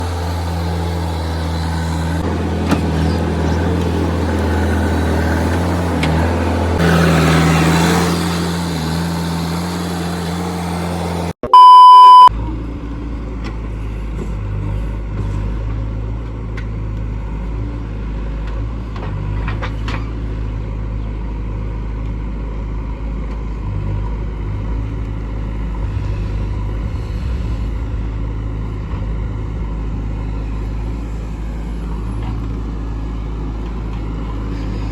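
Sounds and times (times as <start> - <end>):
diesel engine running: 0.0 - 34.9
loud pure beep: 11.4 - 12.3.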